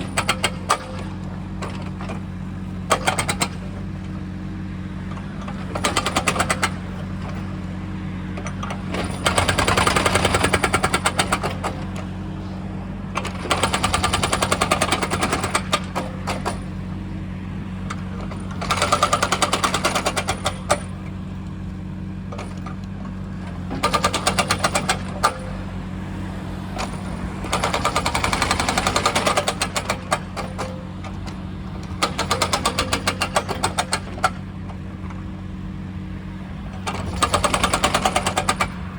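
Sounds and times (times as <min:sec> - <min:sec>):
hydraulic breaker hammering: 0:00.0 - 0:04.1, 0:05.1 - 0:07.5, 0:08.3 - 0:12.2, 0:13.1 - 0:16.8, 0:17.7 - 0:21.2, 0:22.2 - 0:25.8, 0:26.7 - 0:35.3, 0:36.4 - 0:38.9
diesel engine running: 0:00.0 - 0:38.9.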